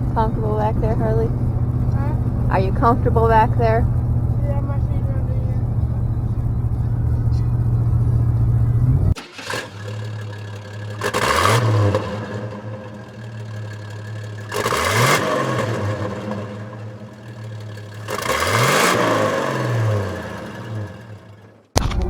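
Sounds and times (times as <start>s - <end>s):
vehicle engines revving: 0.0s - 21.6s.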